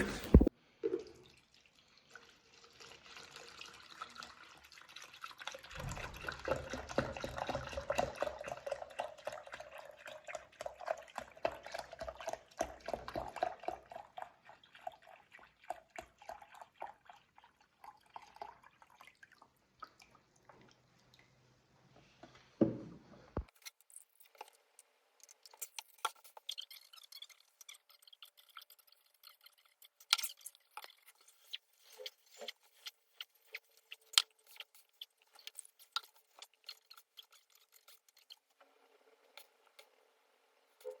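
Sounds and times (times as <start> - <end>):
milk glugging into a glass: 0.0 - 21.4
drips: 0.0 - 21.5, 25.2 - 38.7.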